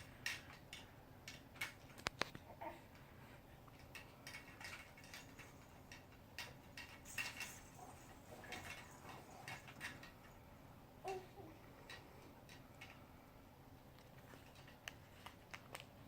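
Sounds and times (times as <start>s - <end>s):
soft baby sounds: 2.4s - 3.4s, 11.0s - 12.2s.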